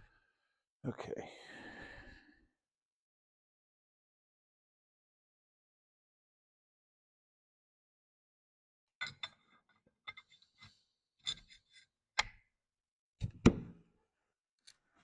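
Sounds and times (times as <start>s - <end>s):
metal parts clicking and knocking: 9.0s - 9.4s.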